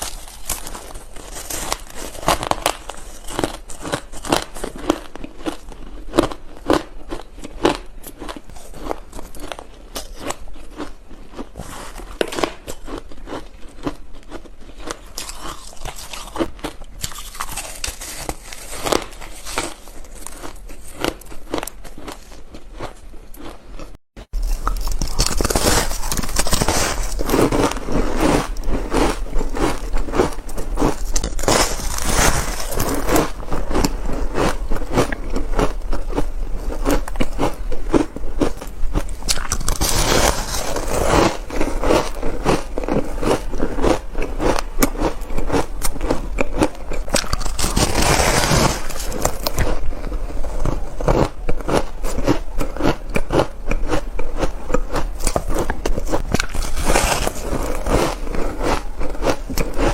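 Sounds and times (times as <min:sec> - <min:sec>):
chewing crunchy ice: 0:00.0 - 0:59.9.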